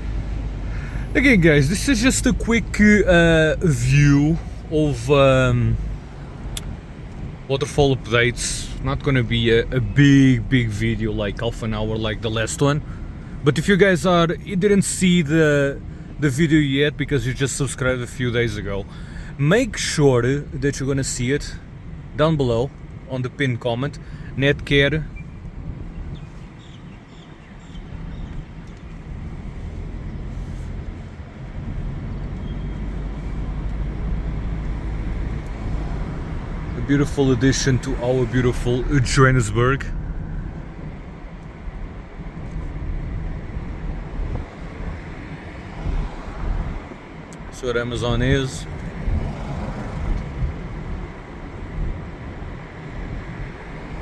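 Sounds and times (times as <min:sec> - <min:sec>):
car road and engine rumble: 0:00.0 - 0:54.0.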